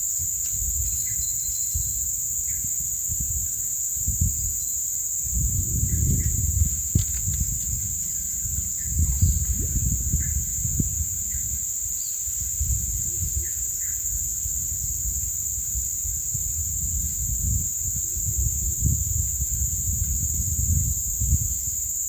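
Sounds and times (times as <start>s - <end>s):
insects droning: 0.0s - 22.0s
bird chirps: 0.9s - 2.0s.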